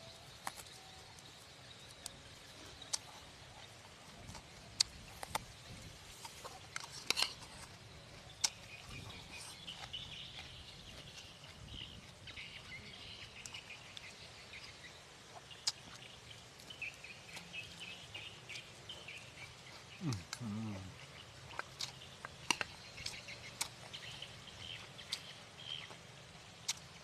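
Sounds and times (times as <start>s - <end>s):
faint open-air hiss: 0.0s - 27.0s
crunchy food crunching: 0.3s - 14.2s, 15.3s - 27.0s
birds chirping: 5.6s - 26.8s.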